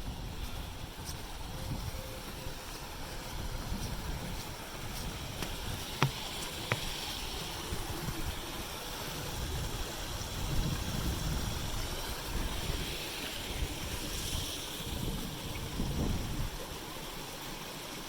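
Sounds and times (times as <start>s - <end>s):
wind buffeting microphone: 9.3s - 16.6s.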